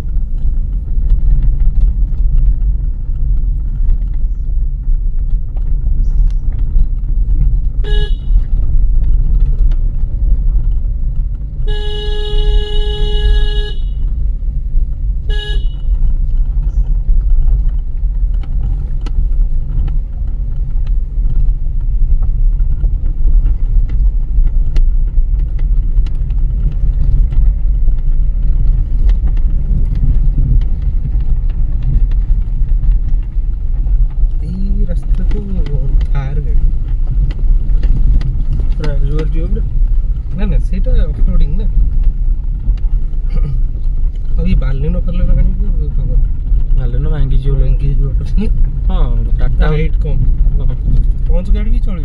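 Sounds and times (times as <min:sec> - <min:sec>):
car driving rumble: 0:00.0 - 0:52.0
car horn toots: 0:07.8 - 0:08.6, 0:11.6 - 0:14.2, 0:15.2 - 0:16.1.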